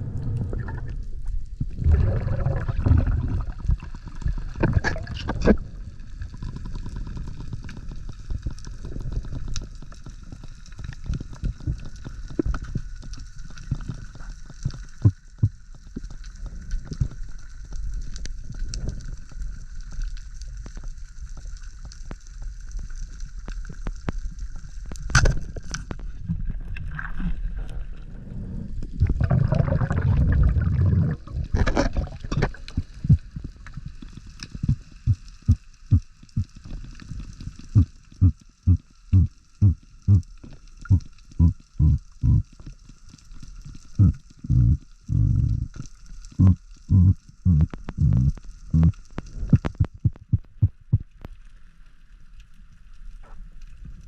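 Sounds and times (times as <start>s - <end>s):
water rush and bubbles: 0.0s - 21.8s, 22.4s - 51.6s
sharp underwater clicks and crackles: 0.0s - 54.0s
underwater rumble: 0.0s - 54.0s.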